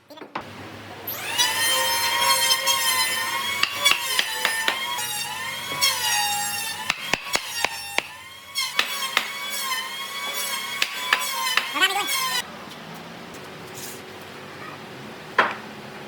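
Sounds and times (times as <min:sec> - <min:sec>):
power tool motor whining: 0:01.1 - 0:12.4.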